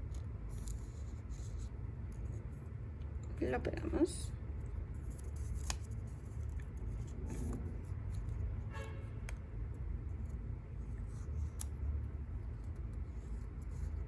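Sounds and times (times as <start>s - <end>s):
low background rumble: 0.0s - 14.0s
horn-like tone: 8.7s - 9.2s.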